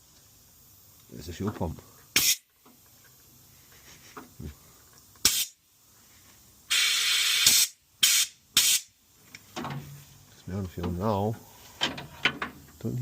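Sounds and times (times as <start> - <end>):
air blow gun hissing: 2.1 - 2.5, 5.2 - 5.6, 6.6 - 9.0.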